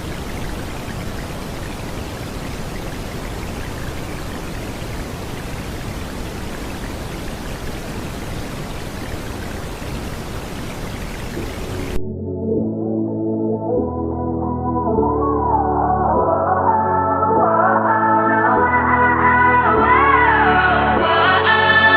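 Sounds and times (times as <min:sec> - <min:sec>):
steady rain hiss: 0:00.0 - 0:12.0.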